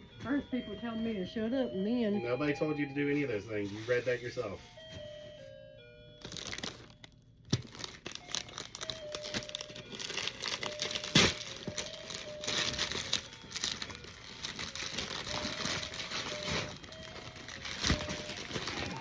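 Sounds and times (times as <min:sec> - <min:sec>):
wrapping paper crinkling: 0:03.6 - 0:04.8, 0:06.2 - 0:19.0.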